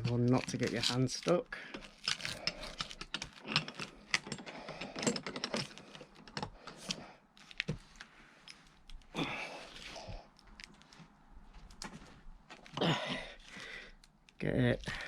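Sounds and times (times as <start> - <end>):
metallic clicks and scrapes: 0.0 - 9.1.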